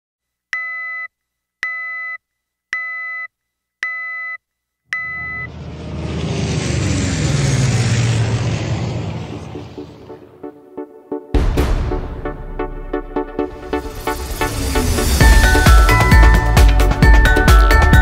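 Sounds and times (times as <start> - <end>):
electronic beeps: 3.9 - 5.5
rushing whoosh with low drone: 5.3 - 10.5.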